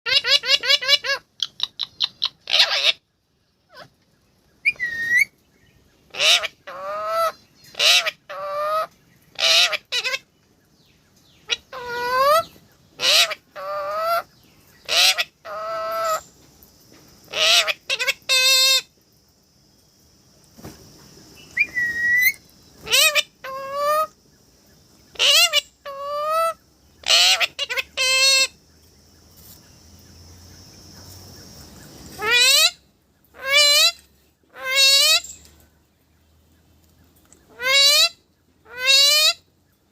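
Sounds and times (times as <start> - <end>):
parrot squawking: 0.1 - 3.0, 6.1 - 10.2, 11.5 - 16.2, 21.7 - 24.1, 25.1 - 28.6, 32.2 - 32.8, 33.4 - 35.3, 37.5 - 39.4
parrot whistles: 4.7 - 5.3, 21.6 - 22.4.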